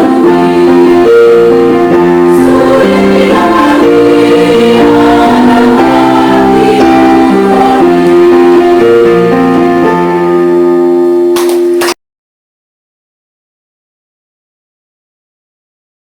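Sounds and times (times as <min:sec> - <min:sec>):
electronic keyboard chords: 0:00.0 - 0:12.0.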